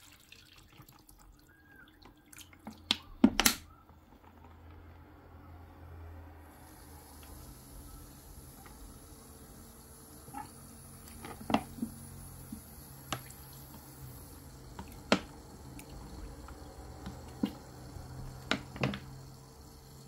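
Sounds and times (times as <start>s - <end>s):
steady low hum: 5.1s - 20.0s.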